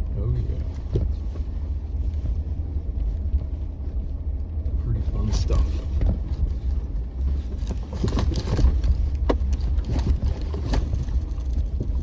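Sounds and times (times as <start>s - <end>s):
low engine rumble: 0.0s - 12.0s
knocks and clunks over rocks: 0.6s - 1.5s, 5.8s - 12.0s.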